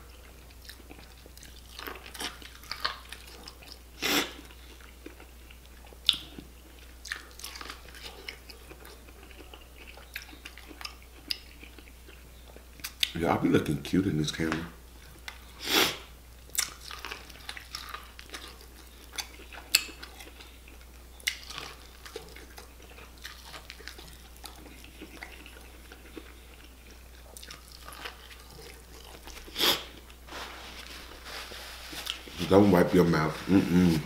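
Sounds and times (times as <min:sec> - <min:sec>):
chewing and wet mouth sounds: 0:00.0 - 0:13.2, 0:16.4 - 0:30.2.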